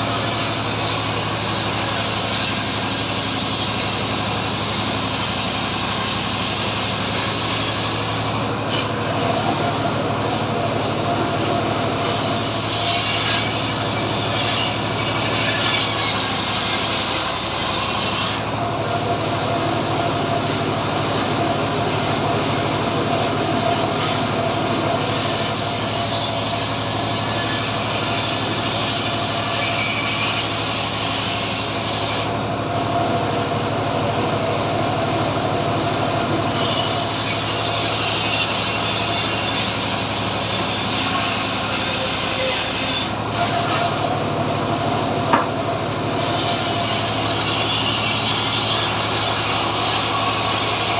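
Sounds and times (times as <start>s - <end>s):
engine-driven circular saw running: 0.0s - 50.9s
saw blade cutting wood hiss: 12.0s - 18.4s, 25.0s - 32.4s, 36.5s - 43.8s, 46.2s - 50.9s.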